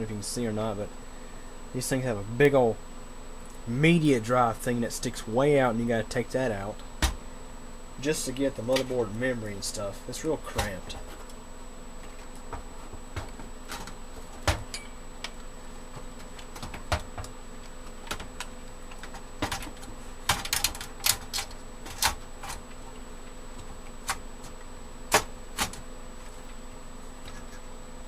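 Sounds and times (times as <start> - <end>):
faint electrical hum: 0.0 - 28.0
clicks inside metal computer case: 18.0 - 22.6, 24.0 - 25.8.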